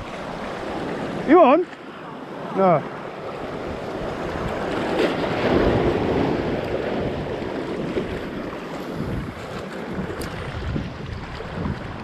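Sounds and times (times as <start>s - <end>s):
sea surf washing against rocks: 0.0s - 12.0s
wind buffeting microphone: 3.4s - 12.0s.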